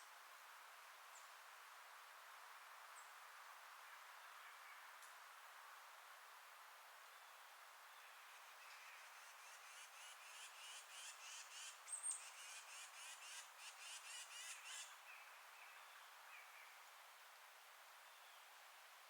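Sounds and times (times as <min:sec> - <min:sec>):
wind in forest: 0:00.0 - 0:19.0.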